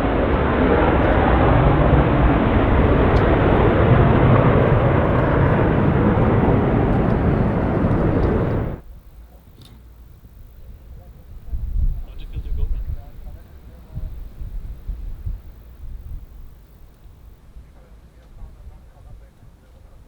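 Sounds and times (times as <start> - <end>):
jet engines deep rumble: 0.0 - 20.0.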